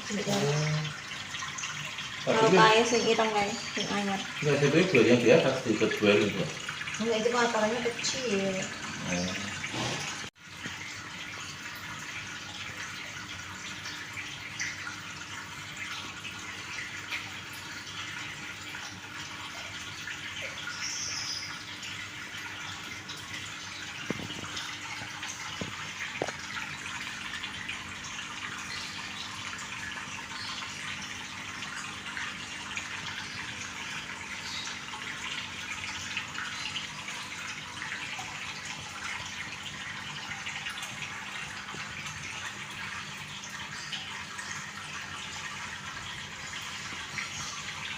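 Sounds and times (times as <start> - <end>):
water drips: 0.0 - 47.9
water running and splashing: 0.0 - 47.9.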